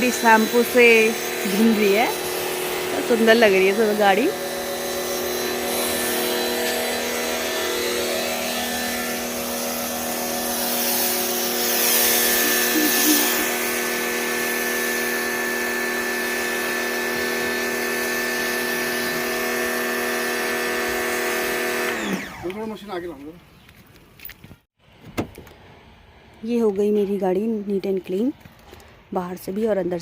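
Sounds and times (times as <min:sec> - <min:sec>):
pressure washer motor hum: 0:00.0 - 0:22.9
water spray hissing: 0:09.1 - 0:15.0.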